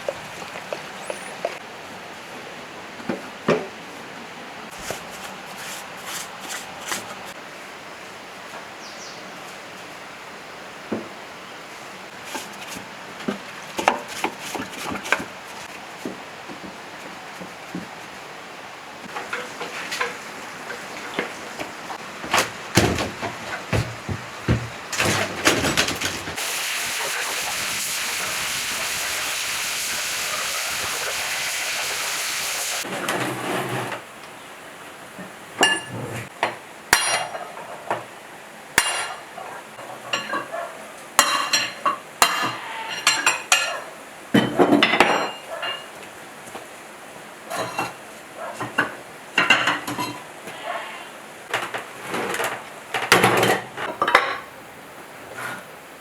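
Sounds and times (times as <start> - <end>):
spraying hiss: 26.4 - 32.8.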